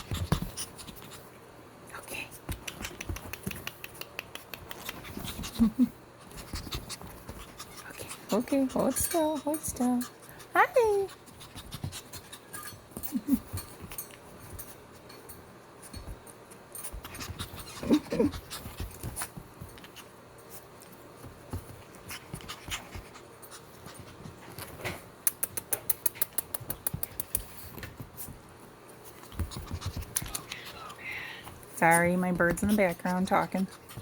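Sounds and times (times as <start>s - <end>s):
small clicks and scratches: 2.5s - 5.6s
puppy panting: 2.6s - 13.7s, 16.9s - 20.2s, 21.9s - 24.8s, 29.1s - 34.0s.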